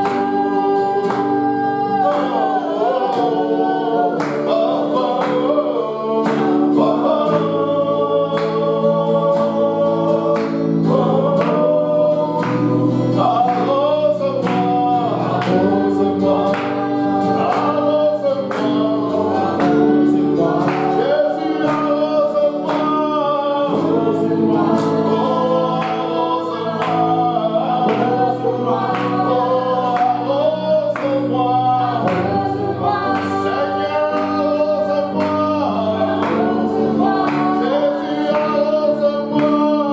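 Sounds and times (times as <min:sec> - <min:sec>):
group of voices singing: 0:00.0 - 0:39.9.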